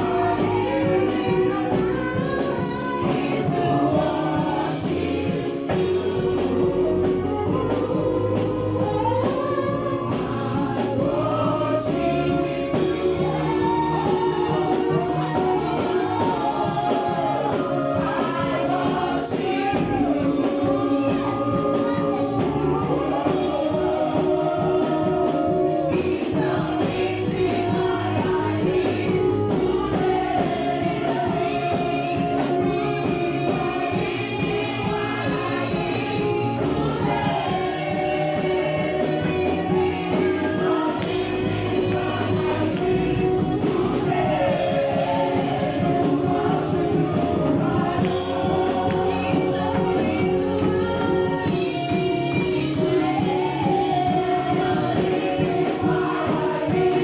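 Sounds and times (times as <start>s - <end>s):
gospel singing with band: 0.0s - 57.0s.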